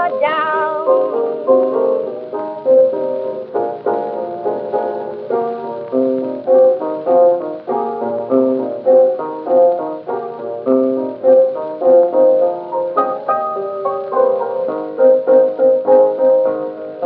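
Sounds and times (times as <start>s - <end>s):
blues piano chords: 0.0s - 17.0s.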